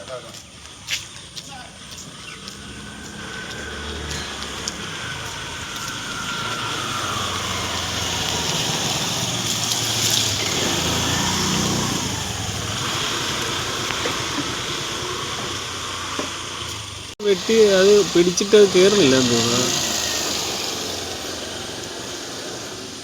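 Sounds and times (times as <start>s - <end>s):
flowing water rushing: 4.5s - 15.2s, 17.2s - 22.2s.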